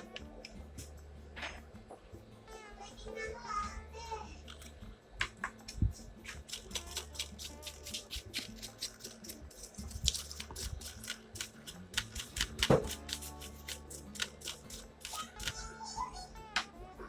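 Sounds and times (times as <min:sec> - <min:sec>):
small parts clicking and tapping: 0:04.4 - 0:15.6.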